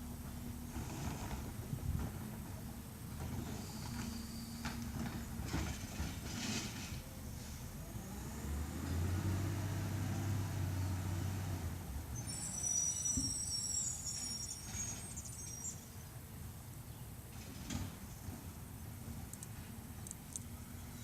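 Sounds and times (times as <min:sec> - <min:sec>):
high-pitched squeal: 0:12.2 - 0:16.0.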